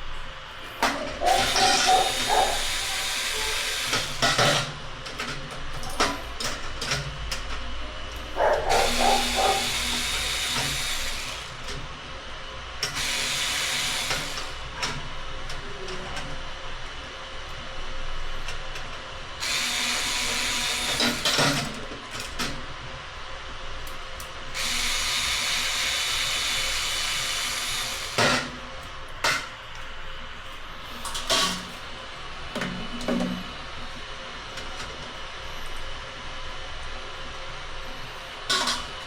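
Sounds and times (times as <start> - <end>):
cordless power screwdriver running: 1.2 - 4.2, 8.6 - 11.5, 13.0 - 14.6, 19.4 - 21.2, 24.6 - 28.2.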